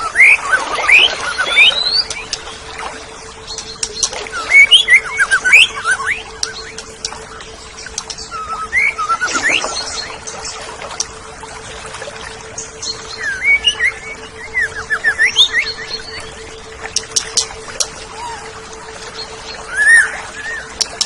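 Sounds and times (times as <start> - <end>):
bird singing whistles and chirps: 0.0 - 2.4, 3.5 - 10.4, 12.6 - 16.4, 19.2 - 21.0
faint steady hum: 0.0 - 21.0.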